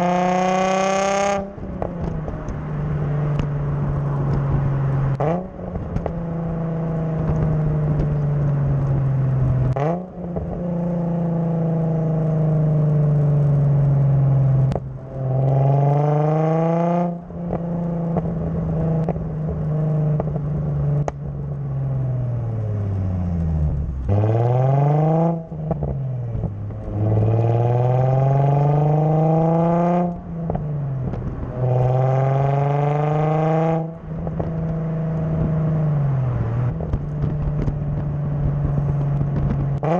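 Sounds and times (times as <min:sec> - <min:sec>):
car engine accelerating: 0:00.0 - 0:39.9
wind rustle on microphone: 0:34.0 - 0:39.9.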